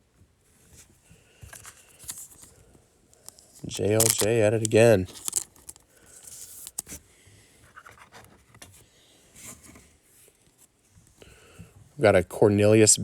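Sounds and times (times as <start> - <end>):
cards sliding and scratching: 1.5 - 2.5, 3.2 - 7.0, 7.6 - 8.8
light clicks of cards: 3.2 - 7.0.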